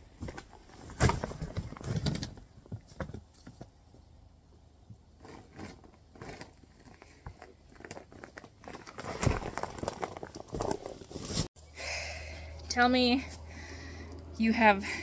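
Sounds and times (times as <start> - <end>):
rustling and crinkling: 0.0 - 11.5.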